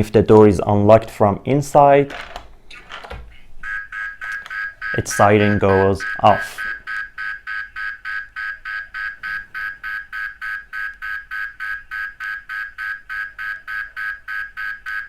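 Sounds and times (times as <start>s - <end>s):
door lock alarm beeping rapidly: 3.6s - 15.0s.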